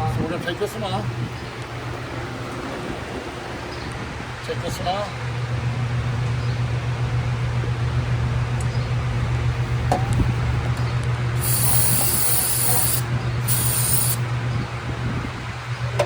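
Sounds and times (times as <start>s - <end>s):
steady low hum: 0.0s - 16.0s
pressurised spray hissing: 11.4s - 14.2s.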